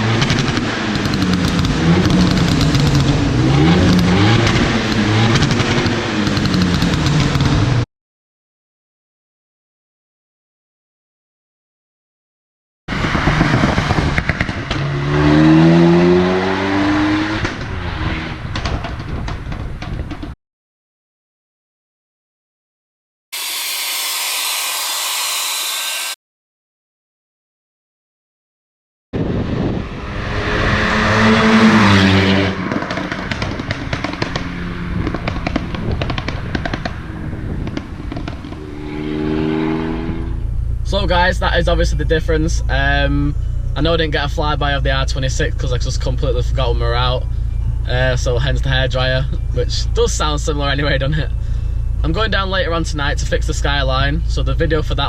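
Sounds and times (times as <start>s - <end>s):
exhaust popping and crackling: 0.0s - 7.8s, 12.9s - 15.7s, 17.3s - 20.4s, 32.5s - 55.0s
turbo car engine accelerating hard: 0.0s - 7.8s, 12.9s - 20.4s, 29.2s - 55.0s.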